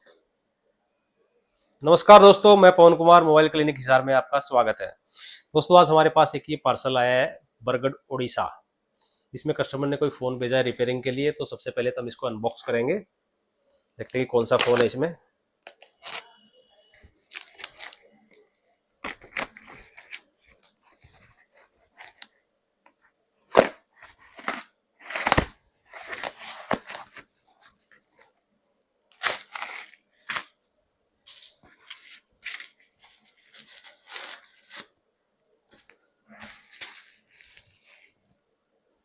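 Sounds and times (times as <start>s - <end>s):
packaging tearing and rustling: 14.5s - 14.9s, 16.9s - 18.1s, 19.0s - 22.3s, 23.5s - 27.8s, 29.1s - 30.6s, 31.3s - 34.9s, 35.7s - 38.2s.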